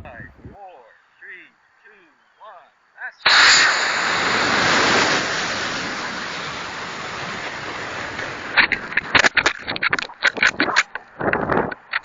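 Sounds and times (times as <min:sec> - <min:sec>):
rocket motor exhaust rushing: 0:03.3 - 0:09.4.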